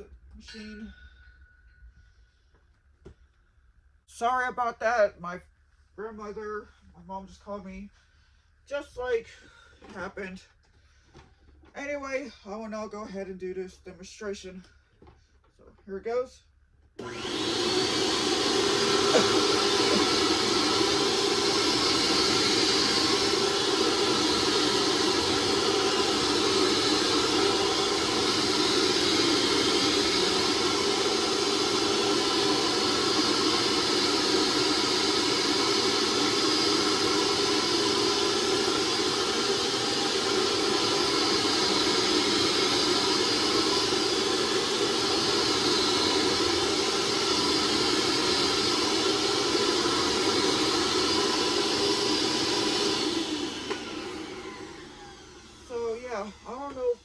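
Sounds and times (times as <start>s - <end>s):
carpet cleaner motor whine: 17.0s - 57.0s.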